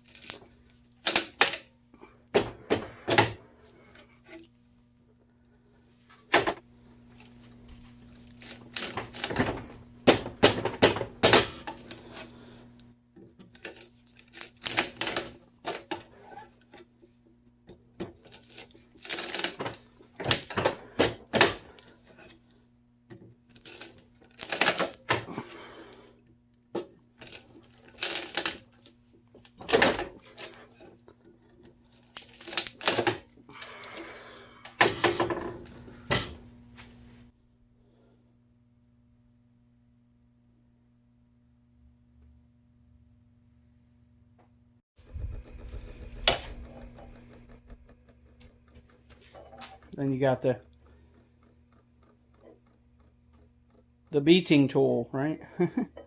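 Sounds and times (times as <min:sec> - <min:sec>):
steady low hum: 0:00.0 - 0:56.0
cable cutters snipping wire: 0:13.4 - 0:16.0.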